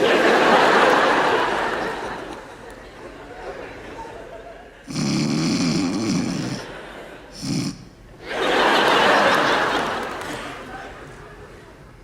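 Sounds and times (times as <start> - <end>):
short snort: 4.9 - 6.7, 7.3 - 8.0
woman snoring loudly: 4.9 - 6.7, 7.4 - 7.9.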